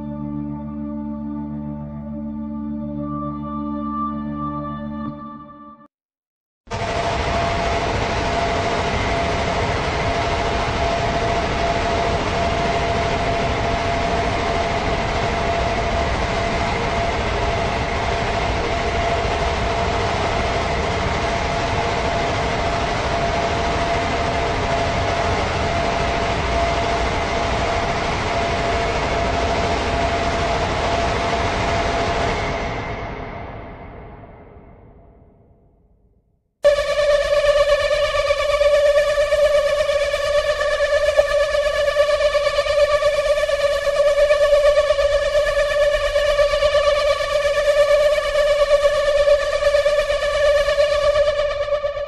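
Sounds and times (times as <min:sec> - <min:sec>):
steady rumbling: 0:06.7 - 0:35.2
faint constant whine: 0:06.7 - 0:35.4, 0:36.6 - 0:52.0.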